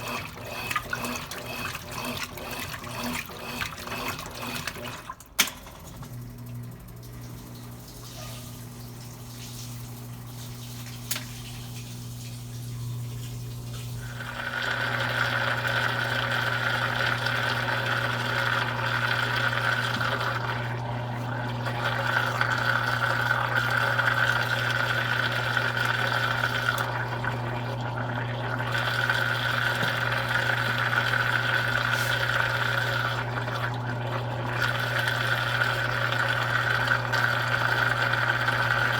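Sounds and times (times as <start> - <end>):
washing machine click: 5.2 - 6.2.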